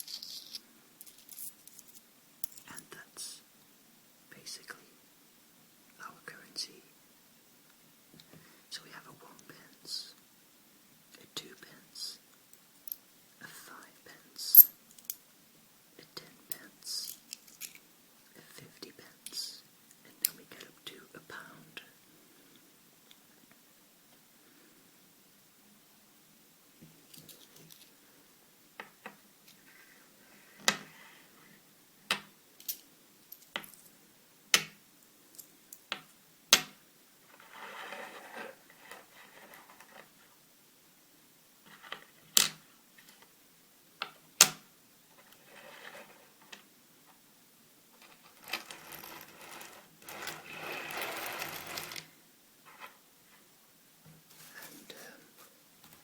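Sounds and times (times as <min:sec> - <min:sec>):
coins clicking together: 0:00.0 - 0:02.8
soft rustling: 0:54.1 - 0:56.0.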